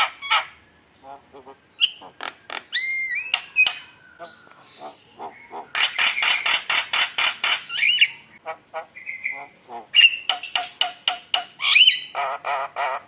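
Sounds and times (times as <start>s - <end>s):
bird harsh chattering: 1.8s - 13.0s
bird clicks: 2.2s - 3.9s, 10.3s - 11.6s.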